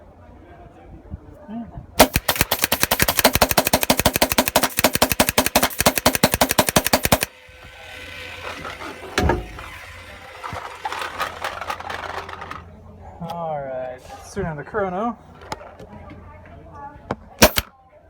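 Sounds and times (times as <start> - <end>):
paintball marker firing: 2.0 - 7.4, 17.4 - 17.7
thump: 9.2 - 9.7.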